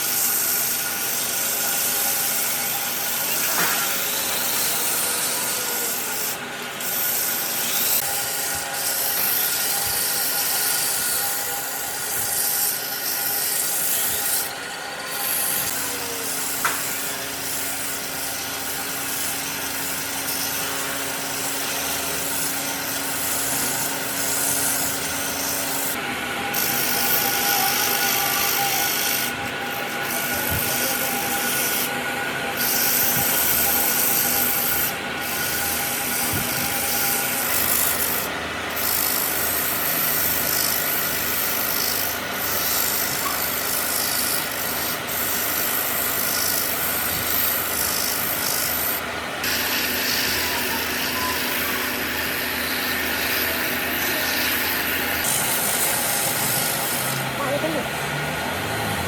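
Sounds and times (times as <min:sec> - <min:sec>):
lathe motor hum: 0:00.0 - 0:59.0
sandpaper rubbing on wood: 0:32.6 - 0:57.8.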